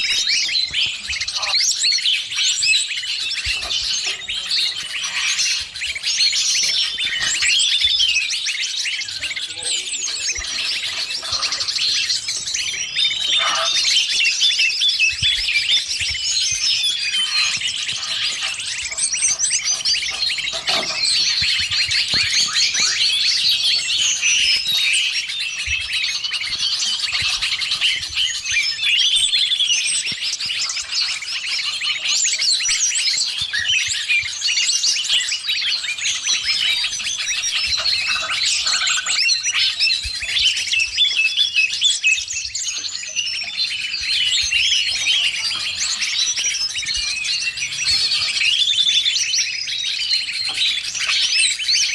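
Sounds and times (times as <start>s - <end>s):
leafbird calls: 0.0s - 51.9s
many songbirds chirping: 0.0s - 51.9s.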